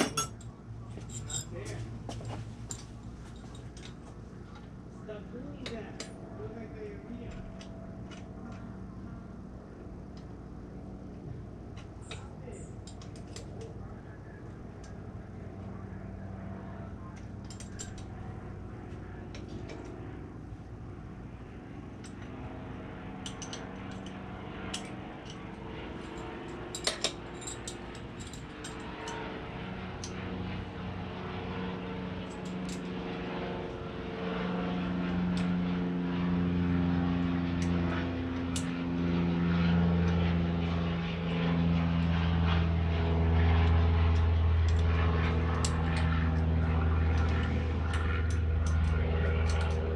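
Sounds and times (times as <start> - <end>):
low engine drone: 0.0 - 49.9
clicks and taps of parts handled: 17.2 - 18.1, 23.2 - 24.1, 26.7 - 28.8, 43.6 - 44.9, 47.2 - 49.8.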